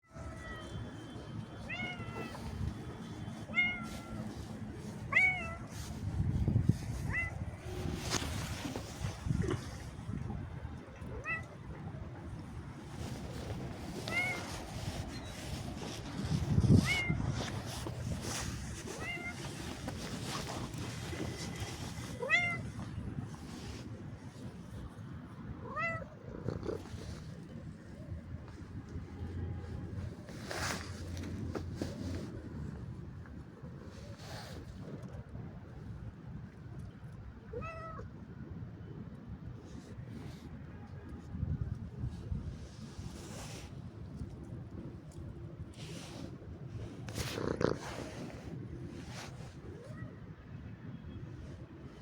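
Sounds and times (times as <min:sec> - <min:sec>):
low background noise: 0:00.0 - 0:52.0
cat meowing: 0:01.6 - 0:02.5, 0:03.4 - 0:04.2, 0:05.0 - 0:05.7, 0:13.9 - 0:14.6, 0:16.8 - 0:17.3, 0:19.0 - 0:19.6, 0:22.1 - 0:22.9, 0:25.6 - 0:26.8, 0:37.5 - 0:38.1.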